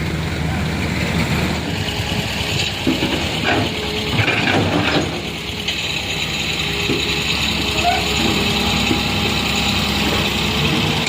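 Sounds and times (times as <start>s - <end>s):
truck engine running: 0.0s - 11.0s.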